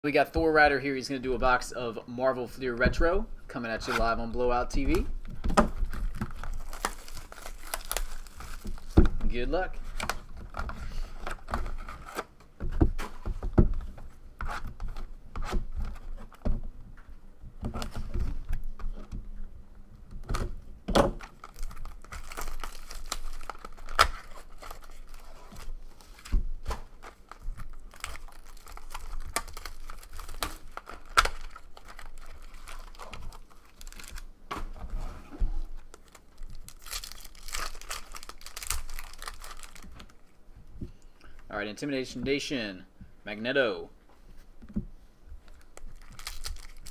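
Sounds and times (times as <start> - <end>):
wrappers tearing and crinkling: 5.8 - 9.4, 21.2 - 34.3, 35.8 - 40.3, 45.5 - 46.9.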